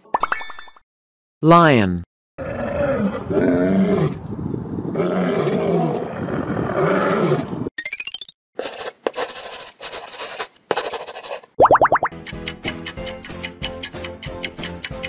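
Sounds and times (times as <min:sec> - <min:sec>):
lion roaring: 0:02.4 - 0:07.7.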